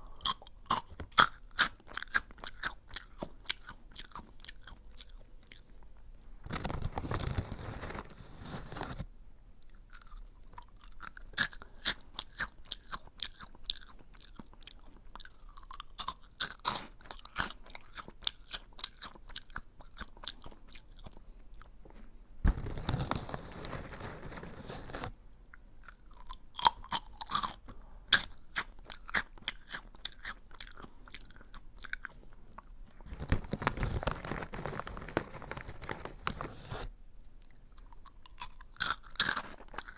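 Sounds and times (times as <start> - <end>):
crunching crisp snack: 0.2 - 9.0, 9.6 - 21.7, 22.5 - 25.1, 25.8 - 36.8, 37.4 - 39.9.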